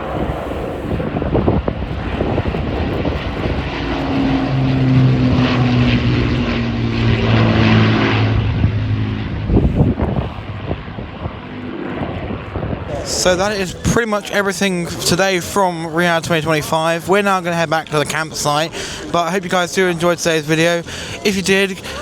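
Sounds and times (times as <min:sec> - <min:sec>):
wind noise on microphone: 0:00.0 - 0:13.9
propeller aircraft engine drone: 0:00.0 - 0:22.0.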